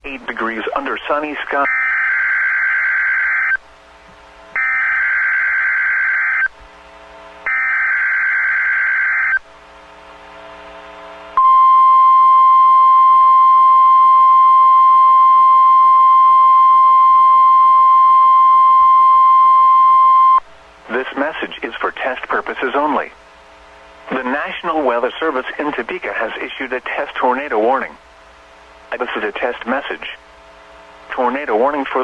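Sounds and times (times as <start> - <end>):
steady single-pitch alarm tone: 1.6 - 3.6, 4.6 - 6.5, 7.4 - 9.4, 11.4 - 20.4.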